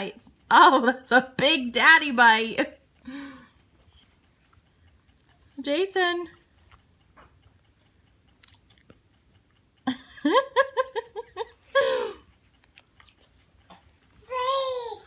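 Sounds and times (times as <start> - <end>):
quiet chewing: 2.9 - 5.6, 6.2 - 10.2, 11.3 - 14.4
child's high-pitched voice sounds: 14.3 - 15.0.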